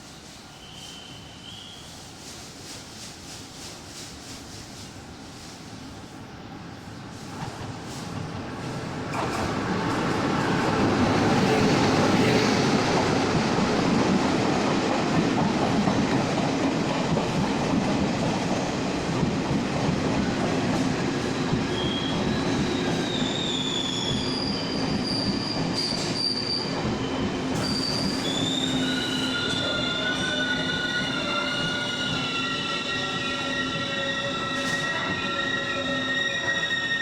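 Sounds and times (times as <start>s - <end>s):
train rumbling: 0.0s - 37.0s
wheels squealing: 21.7s - 37.0s.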